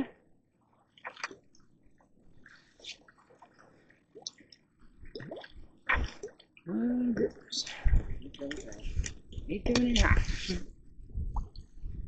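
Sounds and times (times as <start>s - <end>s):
water splashes and drips: 1.0s - 1.6s, 2.4s - 6.6s.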